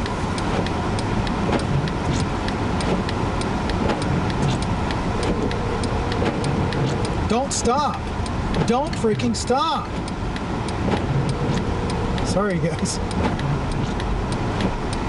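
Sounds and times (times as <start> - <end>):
car engine and road rumble: 0.0 - 15.0
light sharp ticks: 0.0 - 15.0.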